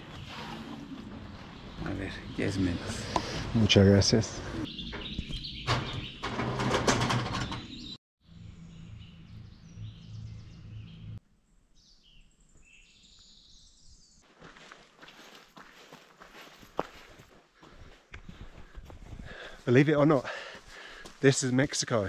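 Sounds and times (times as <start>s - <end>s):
small birds chirping: 1.3s - 6.4s, 7.2s - 14.3s.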